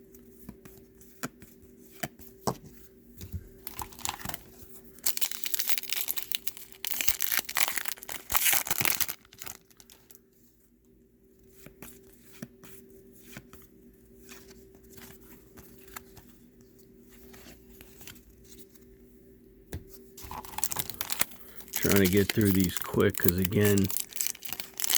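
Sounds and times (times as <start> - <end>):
wrapper tearing and crinkling: 3.7 - 4.4, 5.0 - 10.1, 20.2 - 24.9
cards flicked ticking: 20.7 - 24.9.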